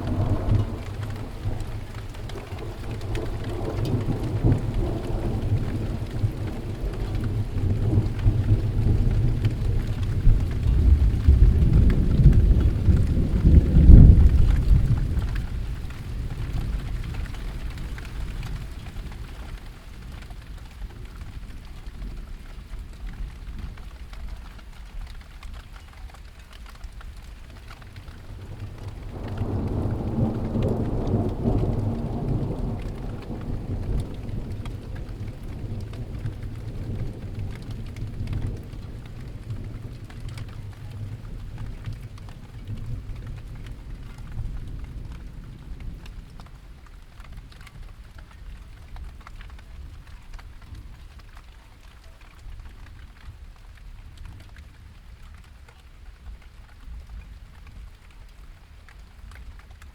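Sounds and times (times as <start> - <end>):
roll of thunder: 0.0 - 22.1, 27.8 - 51.0
steady rain falling: 0.0 - 59.9.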